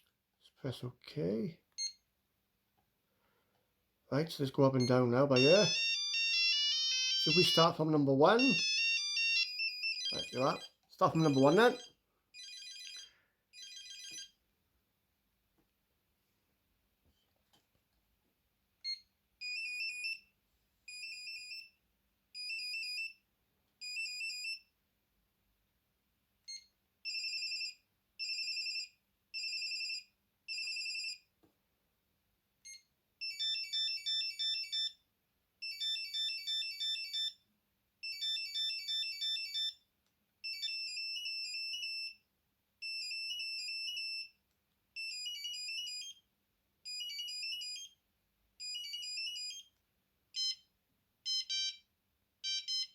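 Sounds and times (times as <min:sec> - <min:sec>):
monophonic ringtone beeping tunes: 0:04.8 - 0:14.3, 0:33.2 - 0:35.0, 0:35.6 - 0:37.4, 0:38.0 - 0:39.8, 0:51.3 - 0:51.8, 0:52.4 - 0:52.9.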